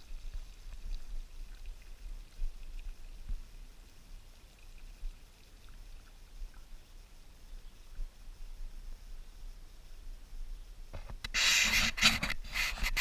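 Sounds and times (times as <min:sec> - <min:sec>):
pump water splashing: 0:00.0 - 0:00.9.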